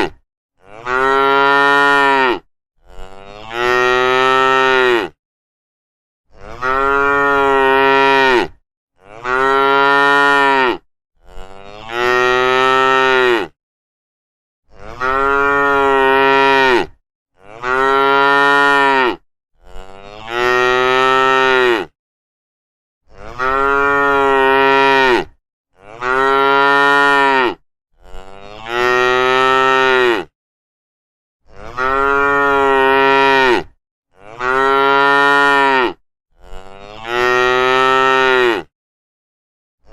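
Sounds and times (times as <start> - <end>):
cow mooing: 0.0 - 5.2, 6.4 - 13.6, 14.7 - 21.9, 23.1 - 30.3, 31.5 - 38.7.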